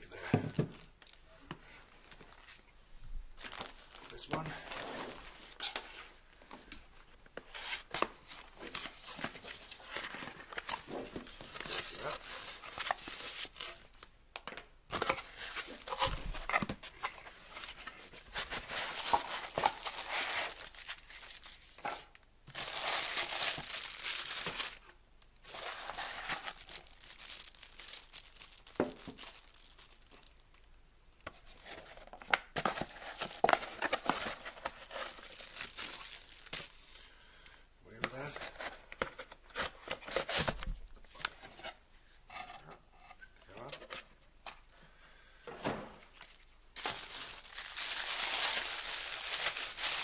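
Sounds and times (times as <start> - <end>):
packaging crinkling and tearing: 7.6 - 14.1, 14.9 - 30.8, 31.4 - 37.2, 46.8 - 50.0.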